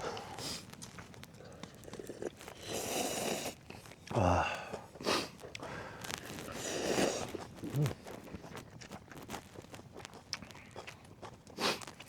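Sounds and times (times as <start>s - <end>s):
person slurping noodles: 1.9s - 8.2s.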